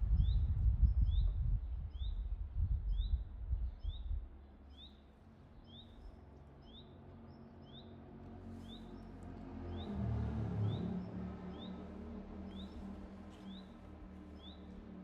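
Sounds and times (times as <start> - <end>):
wind on microphone: 0.0 - 4.3.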